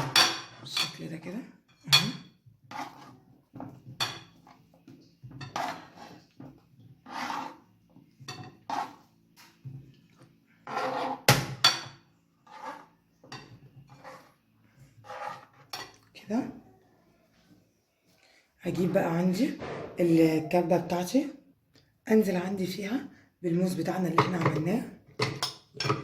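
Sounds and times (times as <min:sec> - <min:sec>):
dishes and cutlery clinking: 0:00.0 - 0:06.5, 0:08.1 - 0:09.0, 0:10.7 - 0:12.6, 0:13.2 - 0:14.3, 0:15.1 - 0:16.1, 0:24.1 - 0:26.0.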